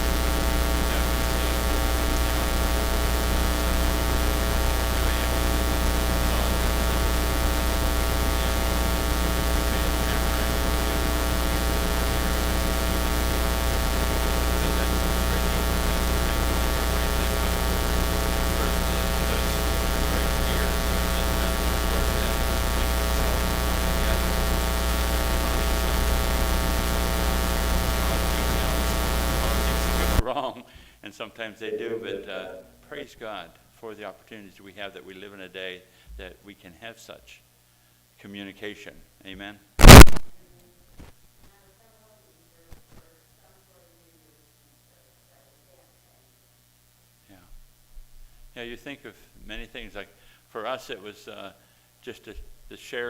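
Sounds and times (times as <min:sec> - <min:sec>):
electrical mains hum and buzz: 0:00.0 - 0:53.0.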